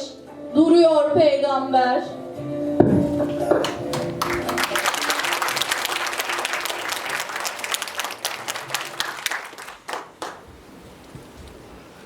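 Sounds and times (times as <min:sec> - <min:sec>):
audience applauding: 0:03.1 - 0:10.7.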